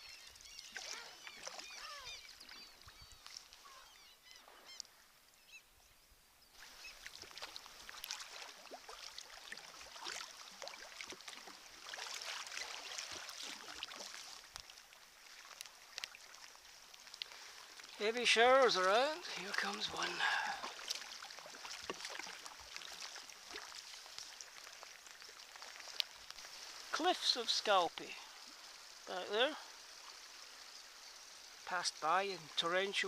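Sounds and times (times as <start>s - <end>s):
water splashing around kayak: 0.0s - 4.8s, 6.5s - 33.0s
seabird calls: 0.0s - 5.7s.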